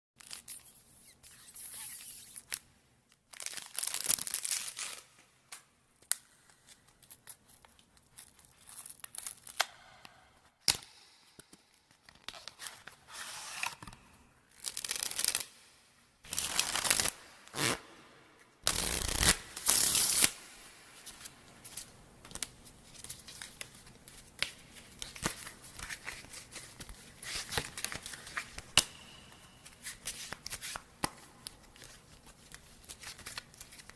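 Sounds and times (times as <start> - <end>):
playing cards shuffling: 14.6 - 15.5, 29.7 - 33.9.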